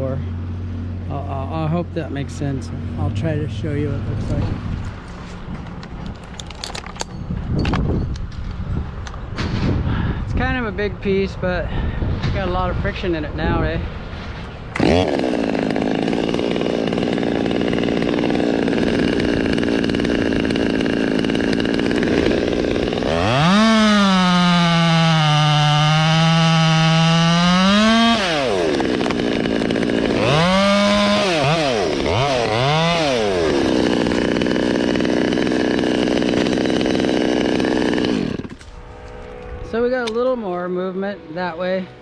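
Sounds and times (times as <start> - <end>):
chainsaw idling and revving: 14.8 - 39.4.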